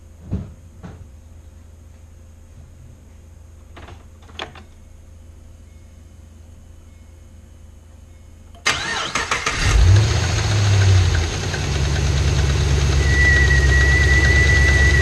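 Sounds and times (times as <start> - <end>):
car engine starting and idling: 8.6 - 15.0.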